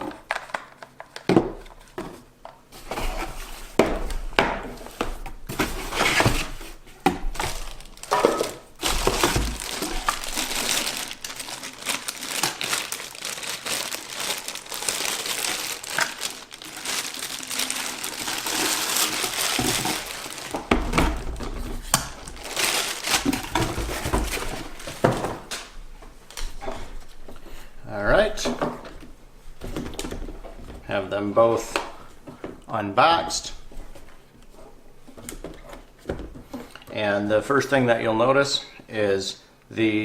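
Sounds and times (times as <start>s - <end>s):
packing material crinkling: 4.9s - 25.7s.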